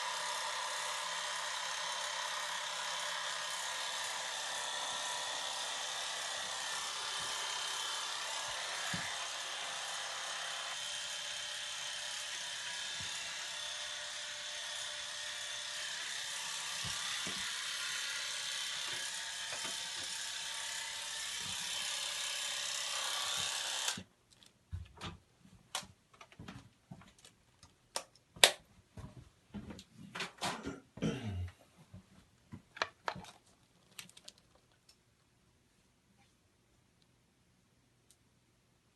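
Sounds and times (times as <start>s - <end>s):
electric hair clippers buzzing: 0.0s - 24.0s.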